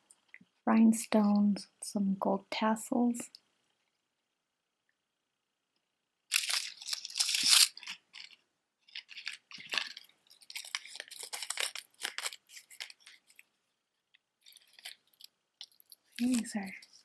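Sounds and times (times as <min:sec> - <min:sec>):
earrings clicking and rustling: 0:06.3 - 0:17.0.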